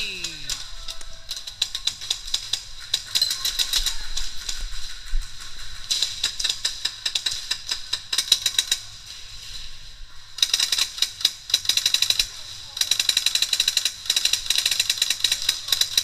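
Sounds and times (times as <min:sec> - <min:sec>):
airsoft guns firing bursts: 0:10.4 - 0:16.0.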